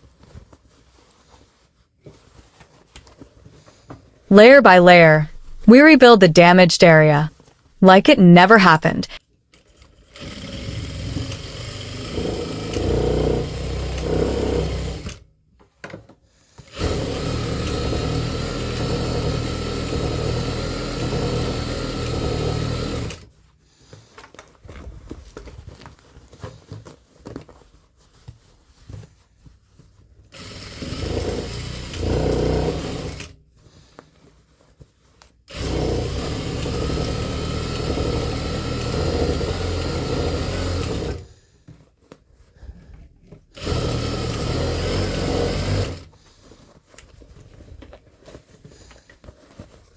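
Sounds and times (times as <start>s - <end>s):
sewing machine stitching denim: 9.5s - 15.2s, 16.6s - 23.3s, 30.3s - 33.4s, 35.5s - 41.4s, 43.5s - 46.1s.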